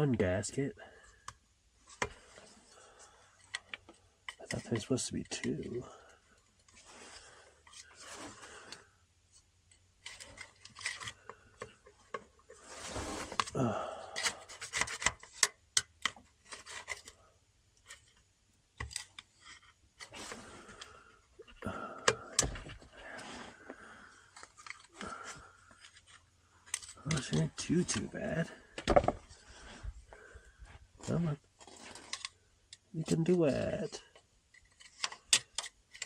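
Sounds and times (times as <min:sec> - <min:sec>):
tools clicking and scraping metal: 0:09.7 - 0:12.6, 0:24.4 - 0:28.1
man breathing with effort: 0:12.8 - 0:14.6, 0:20.2 - 0:25.8, 0:28.6 - 0:31.0.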